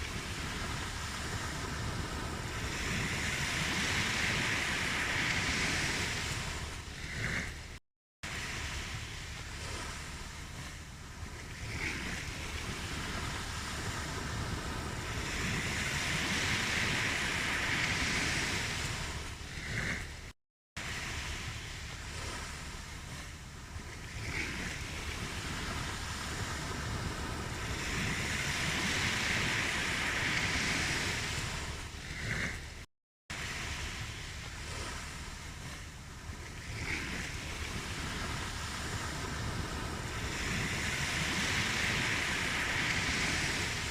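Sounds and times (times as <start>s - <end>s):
ocean surf washing onto beach: 0.0s - 43.9s.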